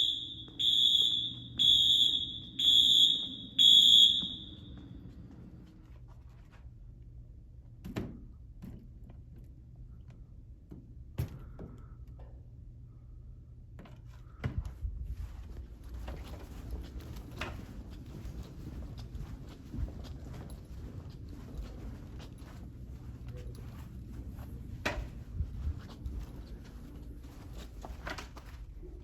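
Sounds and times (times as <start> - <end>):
fire alarm horn pulsing: 0.0 - 5.0.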